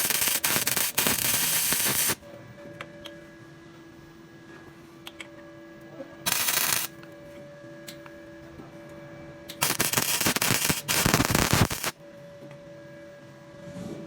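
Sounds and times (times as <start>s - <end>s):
electric welder crackling: 0.0s - 2.2s, 6.3s - 7.0s, 9.5s - 12.0s.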